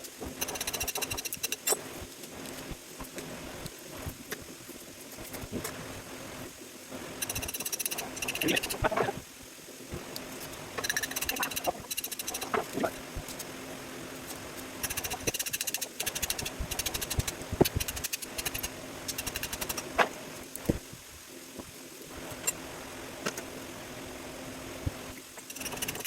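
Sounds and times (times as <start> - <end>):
rapid mechanical clicking: 0.0 - 3.7, 7.2 - 9.0, 10.4 - 13.6, 14.2 - 20.6, 25.4 - 26.0
steady low hum: 0.0 - 26.0.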